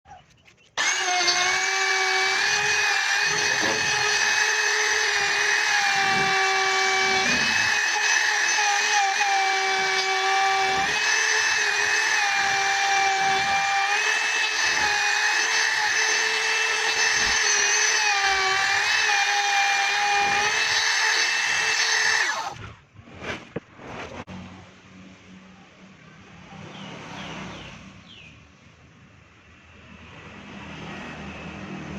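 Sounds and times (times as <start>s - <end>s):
electric router whining: 0.8s - 22.6s.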